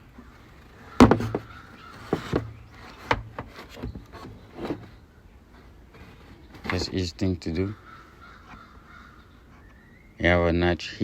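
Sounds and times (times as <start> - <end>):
plastic rubbing and scraping: 0.0 - 5.0, 5.6 - 7.3
hard plastic knocks and clicks: 0.9 - 4.9.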